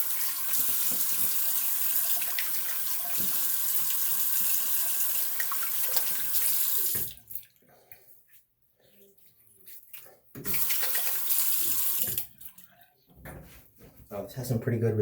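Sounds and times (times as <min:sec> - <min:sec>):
sink tap running: 0:00.0 - 0:07.2, 0:10.5 - 0:12.3
water splashing: 0:00.0 - 0:07.9, 0:09.3 - 0:12.8.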